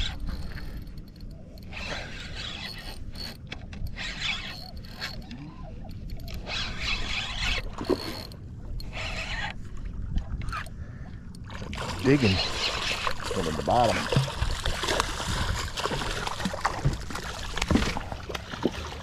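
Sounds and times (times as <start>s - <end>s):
fishing reel ratcheting: 0.0s - 9.6s, 12.0s - 14.3s
wind rumble on microphone: 5.3s - 10.9s, 11.7s - 18.8s.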